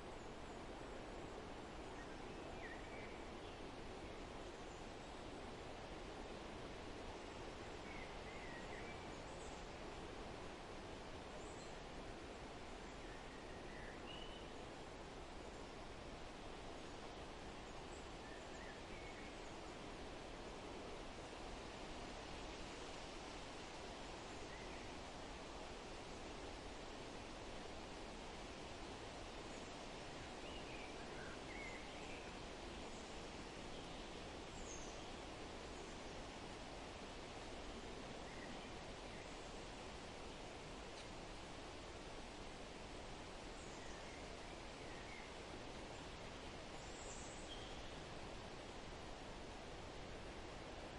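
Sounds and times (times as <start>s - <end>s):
wind through trees: 0.0s - 50.9s
faint bird chirps: 43.6s - 48.1s.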